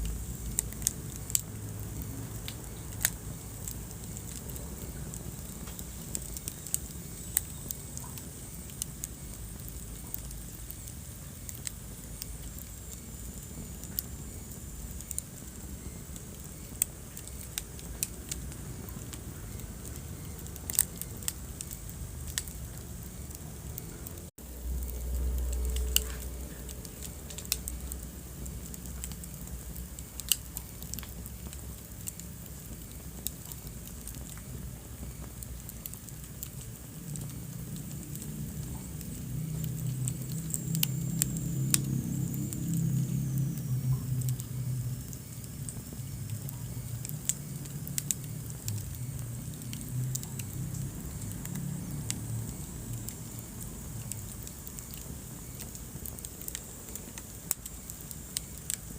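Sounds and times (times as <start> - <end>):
wood fire crackling: 0.0 - 58.9
loud low rumble: 21.8 - 30.0, 36.8 - 55.3.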